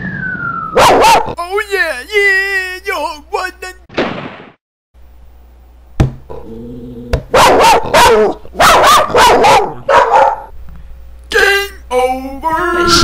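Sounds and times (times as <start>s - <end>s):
dog barking: 0.8s - 1.4s, 7.3s - 10.5s.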